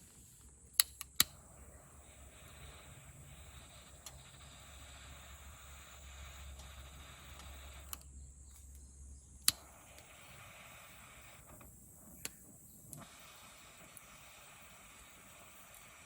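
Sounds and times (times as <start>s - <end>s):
sharp clicks: 0.7s - 1.4s, 6.1s - 10.2s.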